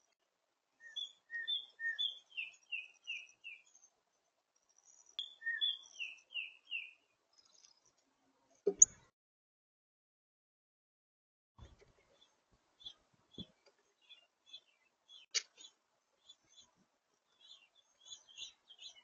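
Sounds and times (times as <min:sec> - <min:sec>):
songbird whistled song: 0:00.8 - 0:03.9, 0:04.7 - 0:07.8, 0:17.4 - 0:19.0.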